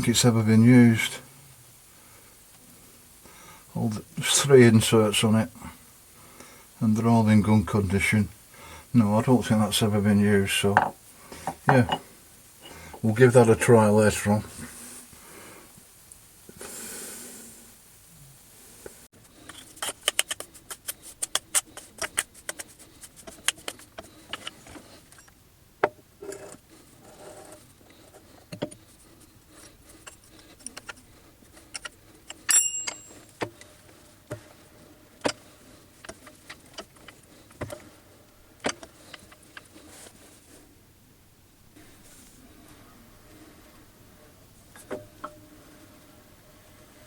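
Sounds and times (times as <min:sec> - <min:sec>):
metal tools clicking and clinking: 0:31.8 - 0:33.3
bright metallic ring: 0:32.5 - 0:33.3.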